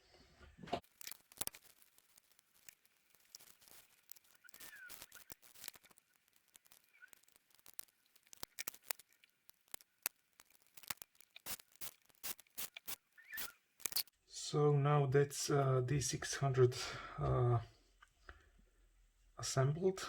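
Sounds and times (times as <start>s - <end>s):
small plastic parts clicking: 0.8s - 14.1s.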